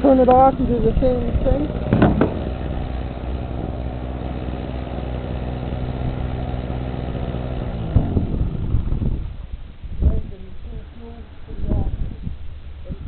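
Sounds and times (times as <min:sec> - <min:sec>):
portable generator engine running: 0:00.0 - 0:09.5.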